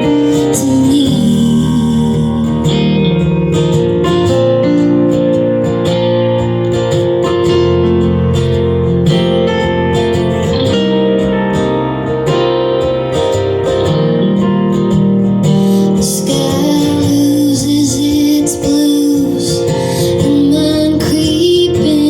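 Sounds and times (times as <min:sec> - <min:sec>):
woman singing: 0:00.0 - 0:03.8, 0:15.7 - 0:22.0
acoustic guitar song: 0:00.0 - 0:22.0.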